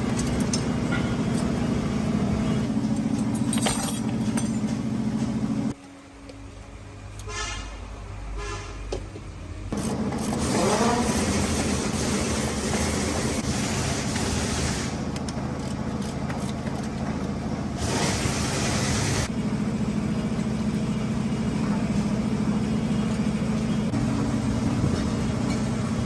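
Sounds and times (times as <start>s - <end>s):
truck engine idling: 9.4s - 26.0s.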